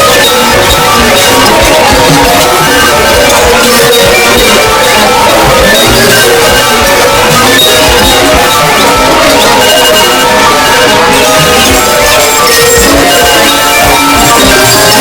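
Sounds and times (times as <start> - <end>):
many phone alarms going off: 0.0 - 15.0.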